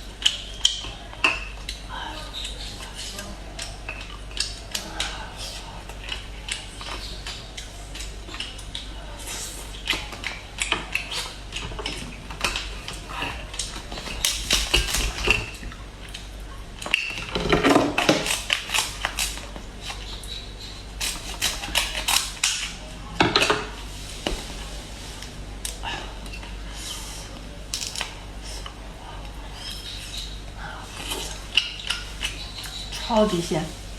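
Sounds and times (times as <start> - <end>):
crab shells cracking: 9.7 - 22.8, 27.6 - 28.6.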